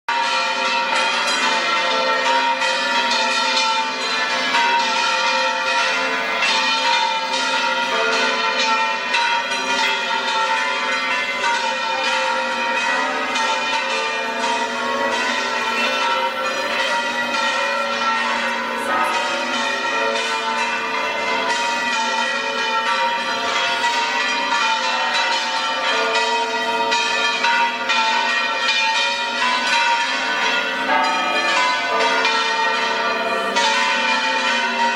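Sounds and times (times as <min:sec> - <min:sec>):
church bells pealing: 0:00.1 - 0:34.9.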